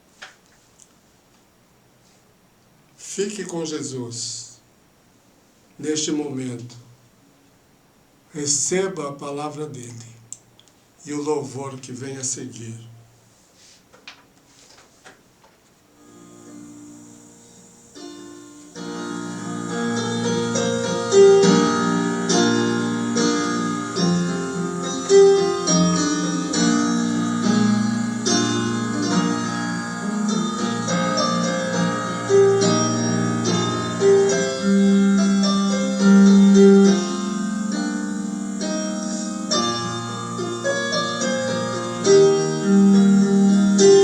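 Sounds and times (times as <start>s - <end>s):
hymn on keyboard: 3.0s - 4.7s, 5.8s - 7.0s, 8.3s - 10.3s, 11.0s - 13.1s, 17.2s - 44.0s.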